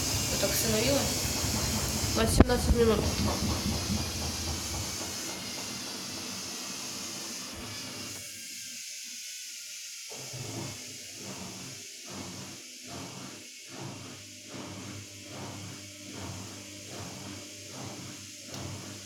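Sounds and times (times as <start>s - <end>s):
washing machine hiss and hum: 0.0s - 19.0s.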